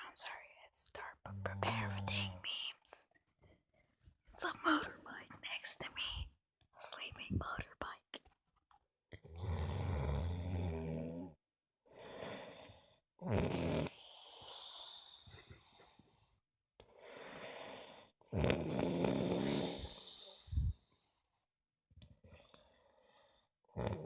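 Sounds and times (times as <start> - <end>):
person snoring loudly: 9.2 - 11.4, 12.0 - 15.6, 17.3 - 20.8, 23.7 - 24.0
quiet breath: 11.9 - 13.1, 13.9 - 18.2, 19.2 - 21.5, 22.1 - 23.6.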